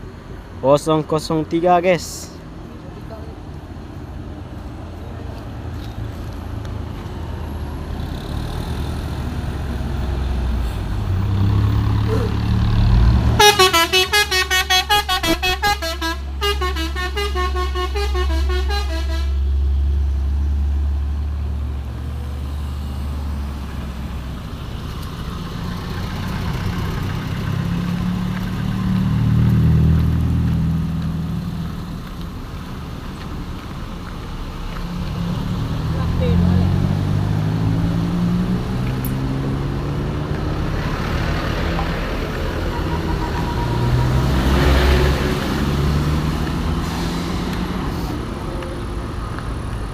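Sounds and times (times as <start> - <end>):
multi-tone air horn melody: 13.4 - 19.5, 42.5 - 44.8.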